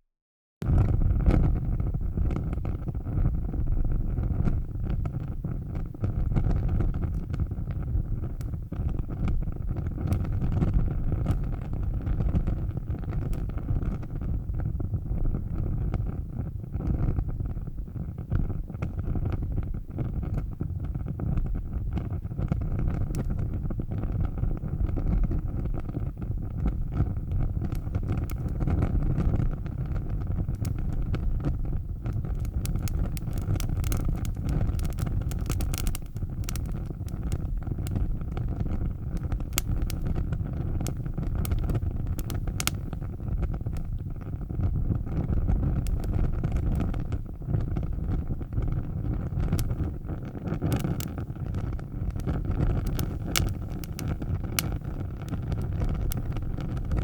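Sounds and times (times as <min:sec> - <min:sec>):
fire roaring and crackling: 0:00.6 - 0:57.0.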